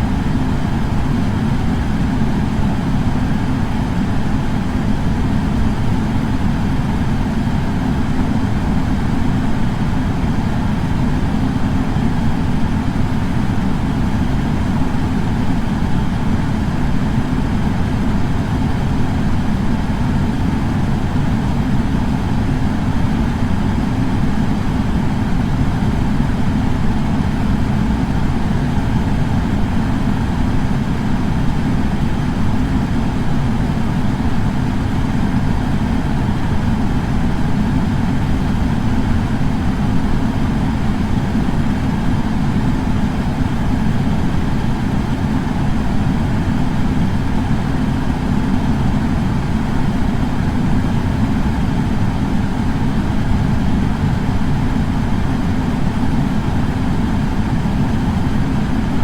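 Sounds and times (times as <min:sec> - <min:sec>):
air purifier fan rushing: 0:00.0 - 0:59.0.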